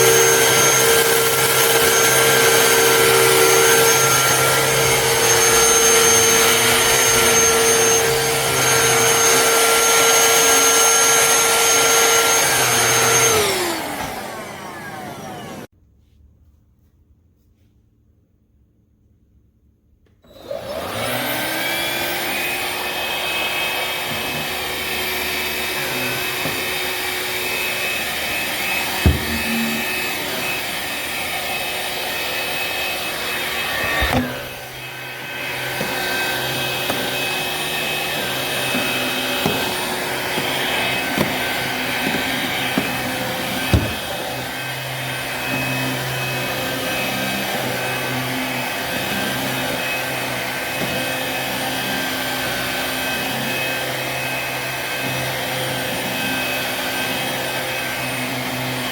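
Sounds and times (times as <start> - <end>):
vacuum motor whine: 0.0 - 15.7, 20.2 - 58.9
sharp knocks: 29.0 - 29.9, 43.6 - 44.1.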